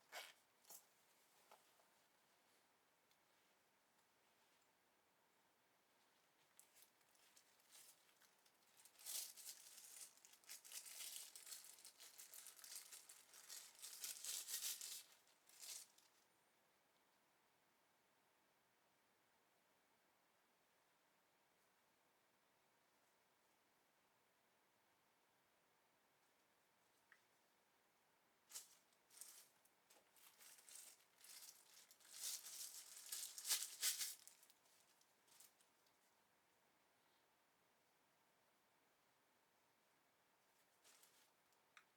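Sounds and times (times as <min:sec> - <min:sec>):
packaging crinkling and rustling: 0:06.6 - 0:16.1, 0:28.5 - 0:36.0.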